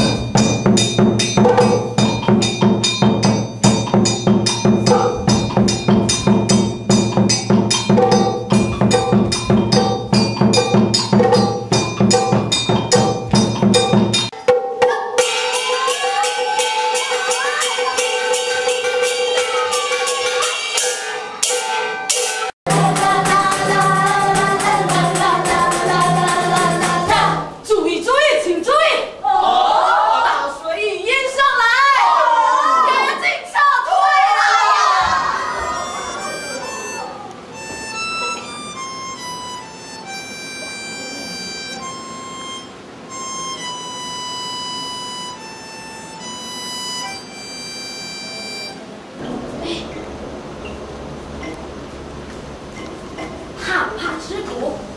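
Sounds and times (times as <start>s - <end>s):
percussion and melody music: 0.0s - 27.6s, 35.5s - 50.0s
voices singing: 22.7s - 27.6s
wind instrument slow melody: 35.6s - 49.1s.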